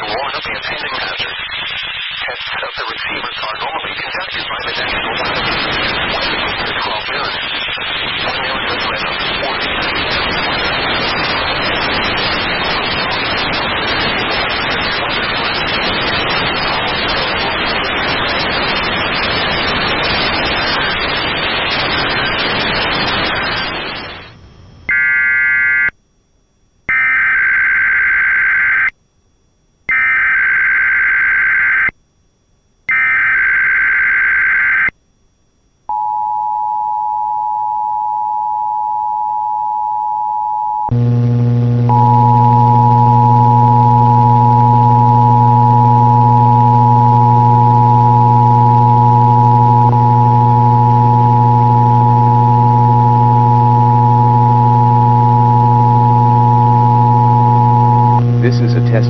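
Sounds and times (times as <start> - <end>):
screeching digital data tones: 0.0 - 24.3
radio static hiss: 0.0 - 24.5, 40.9 - 59.0.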